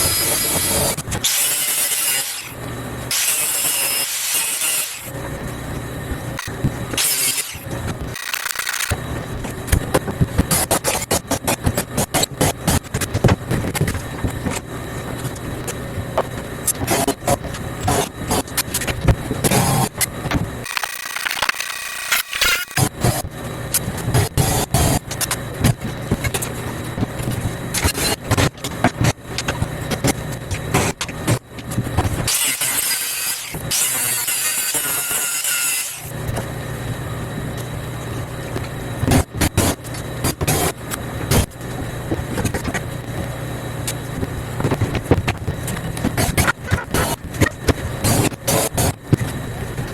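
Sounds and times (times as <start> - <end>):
steady low hum: 5.1 - 20.7, 22.8 - 32.3, 36.1 - 49.9.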